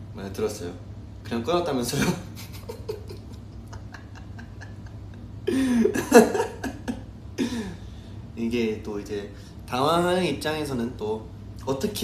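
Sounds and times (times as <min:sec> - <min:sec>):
man laughing: 0:02.0 - 0:07.8.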